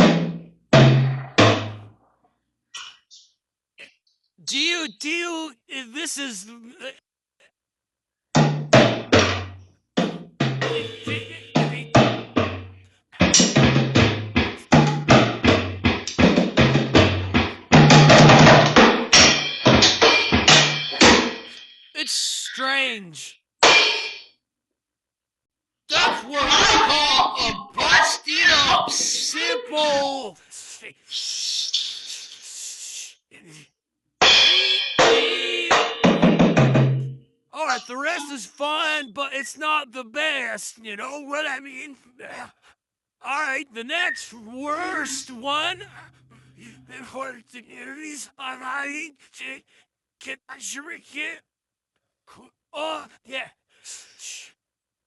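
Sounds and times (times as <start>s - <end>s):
drum kit hits: 0.0s - 1.8s
cymbals ringing: 10.6s - 12.0s, 34.2s - 36.3s.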